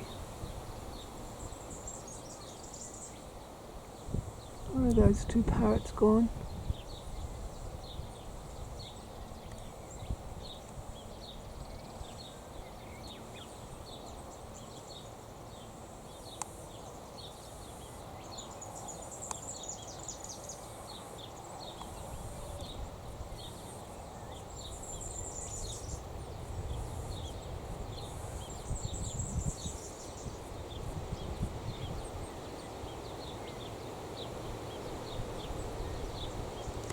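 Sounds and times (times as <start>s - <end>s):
small birds chirping: 0.0s - 36.9s
low outdoor rumble: 4.6s - 6.5s.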